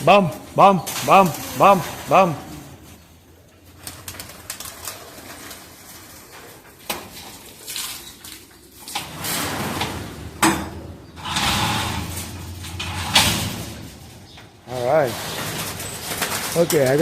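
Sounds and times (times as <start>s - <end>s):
pigeons cooing: 0.0s - 13.0s.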